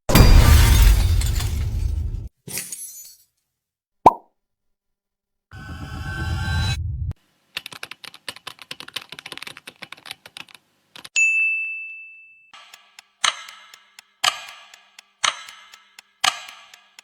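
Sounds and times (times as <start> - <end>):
fast keyboard typing: 7.5 - 11.2
bell ding: 11.2 - 12.6
loud clock ticks: 12.6 - 17.0.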